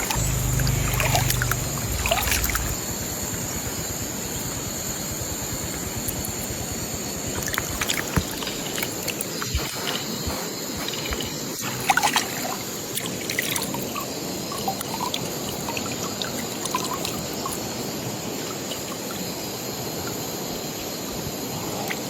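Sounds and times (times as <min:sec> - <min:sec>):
low hum: 0:00.0 - 0:08.8
flowing river water: 0:00.0 - 0:22.0.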